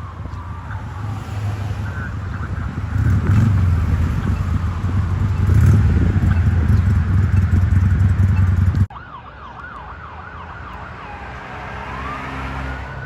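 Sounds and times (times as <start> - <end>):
electronic siren: 0.0 - 7.6, 8.3 - 13.0
heavy vehicle engine rumbling: 0.0 - 8.9.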